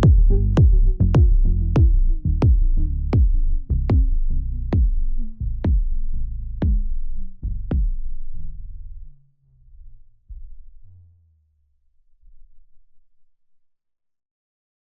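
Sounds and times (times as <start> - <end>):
drum machine hits: 0.0 - 4.2, 4.8 - 5.0, 6.6 - 6.9
low bass tone sliding down: 0.0 - 11.2.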